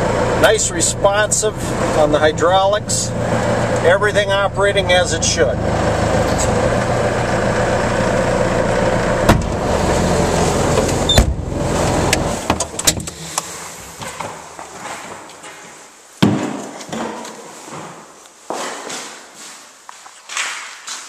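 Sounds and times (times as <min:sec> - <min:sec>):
diesel engine running: 0:00.0 - 0:14.0
clunks: 0:05.7 - 0:07.0, 0:09.2 - 0:15.6
loud knock: 0:09.3 - 0:09.6.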